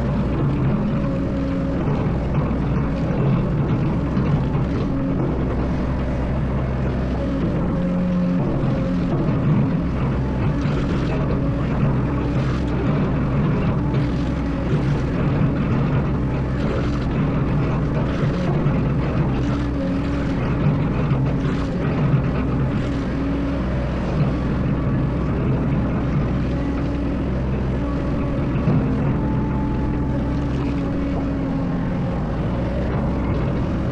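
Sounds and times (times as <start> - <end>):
excavator diesel engine running: 0.0 - 33.9.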